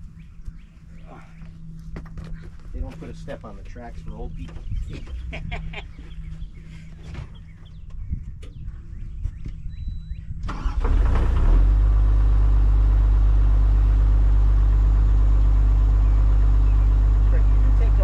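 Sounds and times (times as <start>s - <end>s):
excavator diesel engine: 10.5s - 18.0s.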